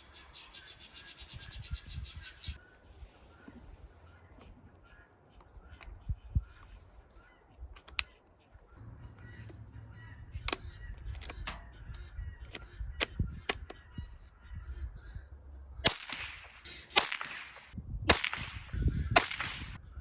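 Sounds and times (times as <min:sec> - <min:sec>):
low rumble: 0:08.8 - 0:15.9
rifle shots: 0:15.8 - 0:19.8.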